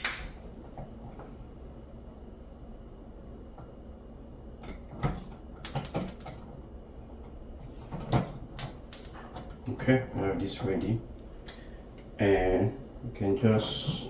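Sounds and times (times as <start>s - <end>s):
clicks and knocks on electrical cable: 4.6s - 6.5s, 7.2s - 9.8s.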